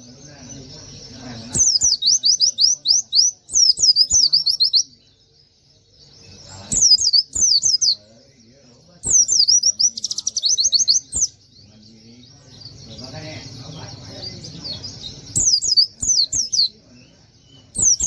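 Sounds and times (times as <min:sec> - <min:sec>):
bird singing high whistles: 0:01.4 - 0:04.9, 0:06.5 - 0:08.0, 0:09.0 - 0:11.4, 0:15.3 - 0:16.8, 0:17.7 - 0:18.0.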